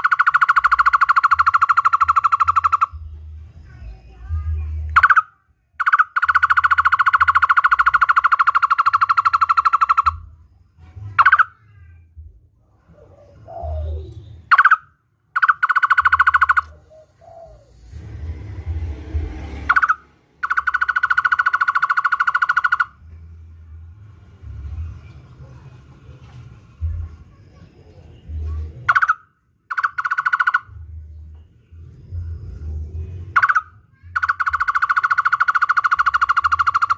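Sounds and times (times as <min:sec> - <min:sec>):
bird trilling: 0:00.0 - 0:03.1, 0:04.8 - 0:10.4, 0:11.1 - 0:11.8, 0:12.9 - 0:18.1, 0:19.6 - 0:23.1, 0:27.4 - 0:31.0, 0:31.7 - 0:36.9
upswept bird notes: 0:00.0 - 0:03.2, 0:13.0 - 0:18.1, 0:19.6 - 0:23.1, 0:28.9 - 0:32.2, 0:33.3 - 0:36.9.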